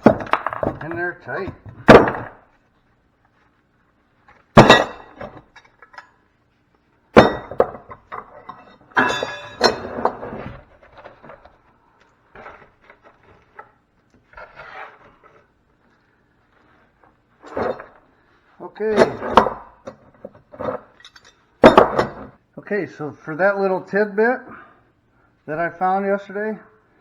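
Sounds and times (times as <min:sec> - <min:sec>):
metal scrap clanging: 0:07.2 - 0:10.4.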